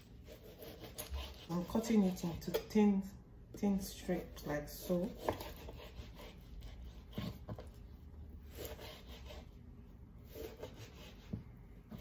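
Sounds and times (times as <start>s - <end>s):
knife slicing on chopping board: 0.2s - 1.7s, 4.2s - 7.7s, 8.5s - 9.5s, 10.2s - 12.0s.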